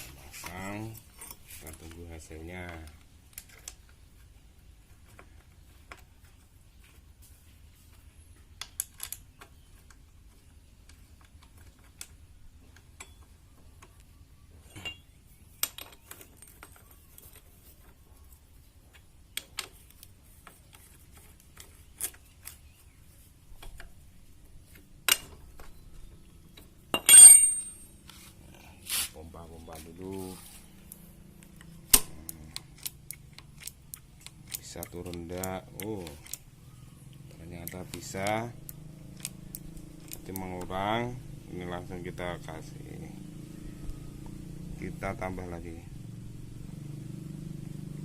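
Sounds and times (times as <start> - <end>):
metallic clinks of tools: 14.6 - 15.1, 26.9 - 28.0
ringing metal clatter: 14.6 - 15.1, 26.9 - 28.0.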